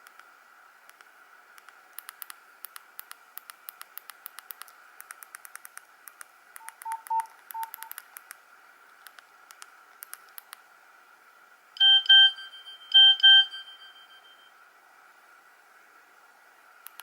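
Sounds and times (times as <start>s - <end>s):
phone keypad buttons clicking: 3.4s - 8.1s
quick electronic beeps: 6.6s - 8.0s.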